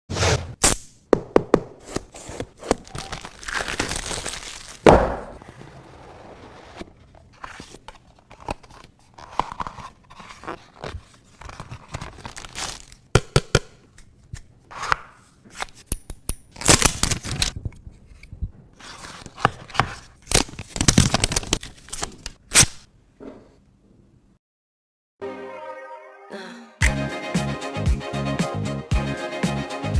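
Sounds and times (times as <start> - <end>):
paper tearing and crinkling: 1.8 - 13.0, 16.6 - 17.6, 18.8 - 22.8.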